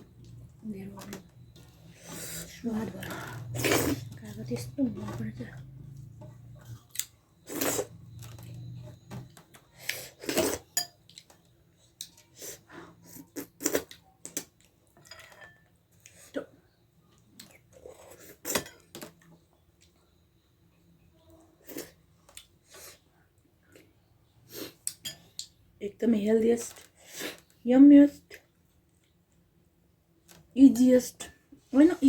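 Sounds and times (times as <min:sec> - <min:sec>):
utensils clinking on plate: 0:15.0 - 0:15.8.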